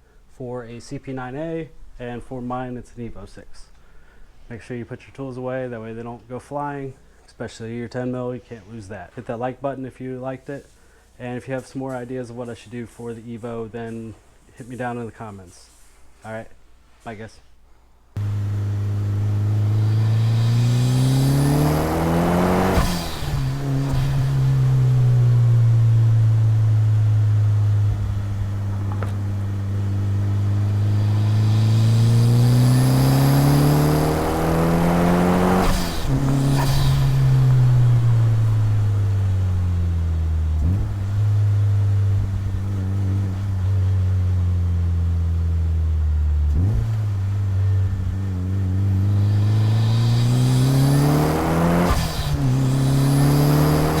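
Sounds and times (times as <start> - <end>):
blow-off valve hiss: 18.2 - 39.2, 49.0 - 54.0
turbocharged car engine revving: 18.2 - 54.0.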